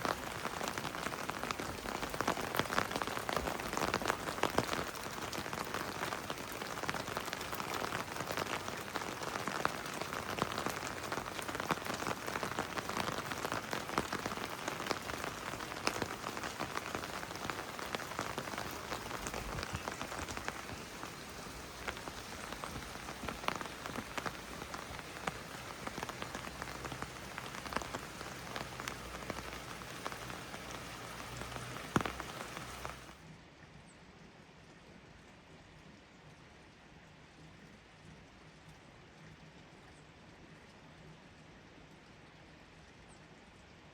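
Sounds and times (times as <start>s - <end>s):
heavy rain falling: 0.0s - 33.2s.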